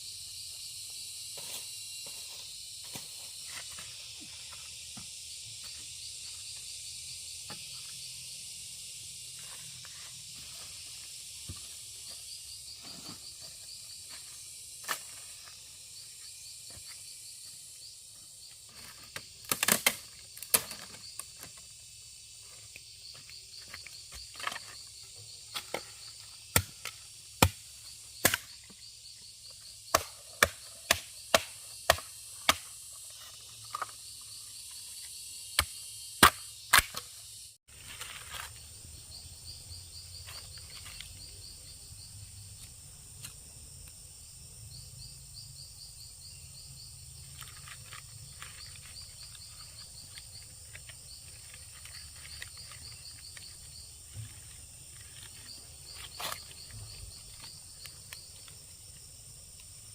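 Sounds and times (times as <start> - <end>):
insects chirping: 0.0 - 59.9.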